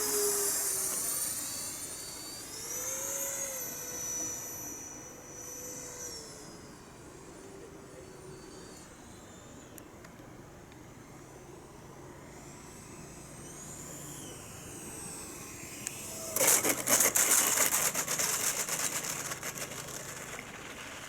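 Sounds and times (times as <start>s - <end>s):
model jet fan whoosh: 0.0s - 6.9s, 13.2s - 21.0s.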